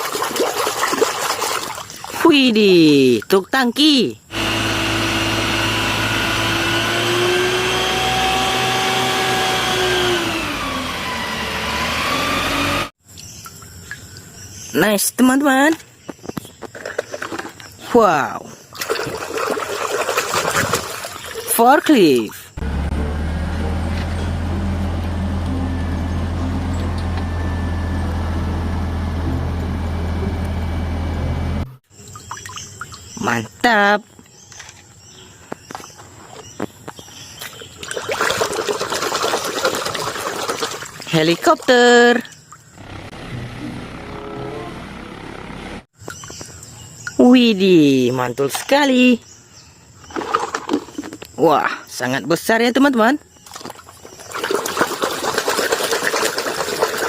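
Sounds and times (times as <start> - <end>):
small motor whining: 4.3 - 13.0.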